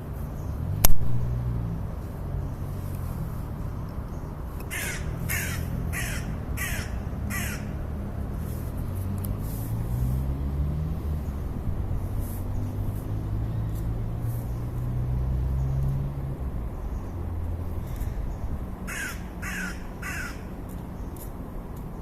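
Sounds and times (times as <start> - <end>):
sharp click: 0.8 - 1.3
crow cawing: 4.7 - 7.8, 18.9 - 20.6.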